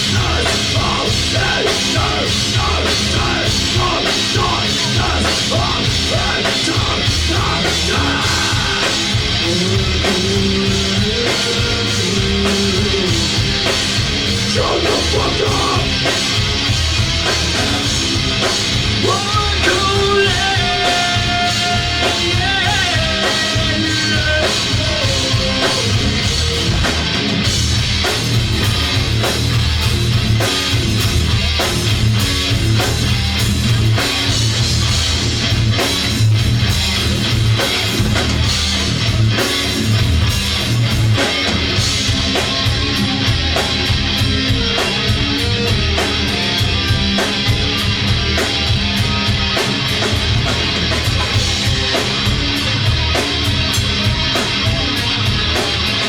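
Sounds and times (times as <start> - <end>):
person singing: 0.0 - 13.8, 14.4 - 16.0, 19.0 - 26.4
live rock band playing: 0.0 - 56.0.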